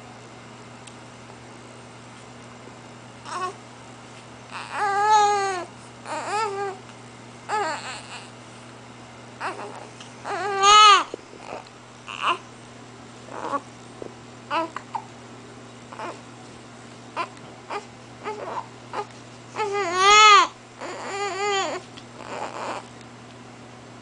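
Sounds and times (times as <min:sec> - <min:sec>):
baby fussing: 0:04.5 - 0:06.8, 0:07.5 - 0:08.3, 0:09.4 - 0:12.4, 0:15.9 - 0:16.2, 0:17.2 - 0:22.8.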